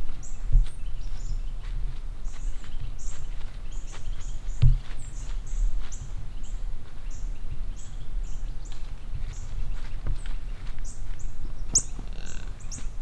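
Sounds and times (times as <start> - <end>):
small bird chirping: 0.2 - 13.0.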